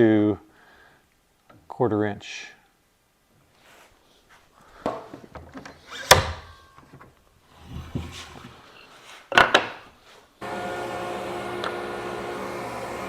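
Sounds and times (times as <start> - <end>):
table saw running hum: 10.4 - 13.0.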